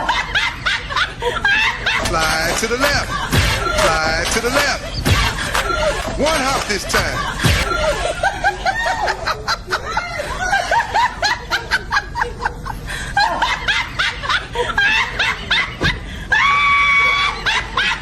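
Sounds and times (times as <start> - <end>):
person laughing hard: 0.0 - 18.0.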